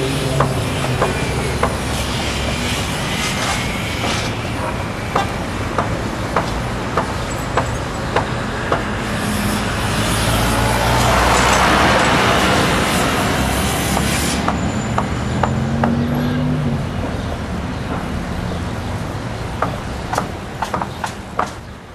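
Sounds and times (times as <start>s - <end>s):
broad rushing noise: 0.0s - 21.9s
sharp knocks: 3.4s - 8.9s, 19.6s - 21.7s.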